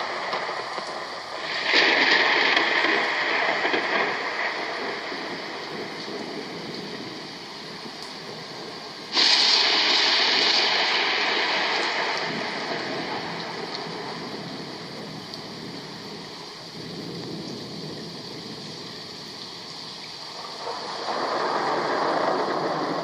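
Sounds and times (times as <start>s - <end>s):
loud thunder crack: 0.0s - 7.2s, 9.1s - 15.8s, 20.4s - 23.0s
steady thunder noise: 0.0s - 23.0s.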